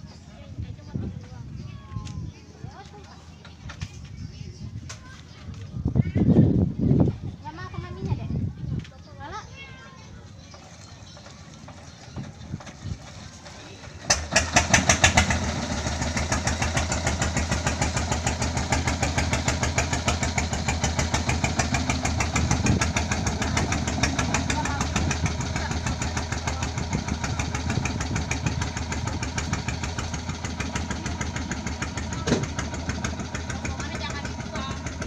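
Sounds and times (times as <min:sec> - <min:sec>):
small engine idling: 0:10.6 - 0:35.0.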